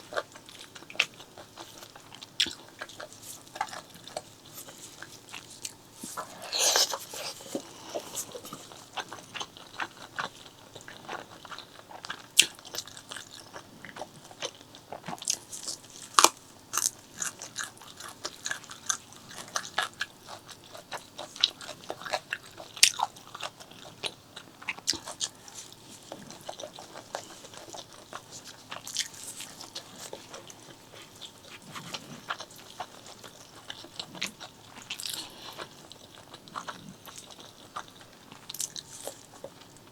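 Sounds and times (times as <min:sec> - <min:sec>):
person chewing food: 0:00.0 - 0:39.9.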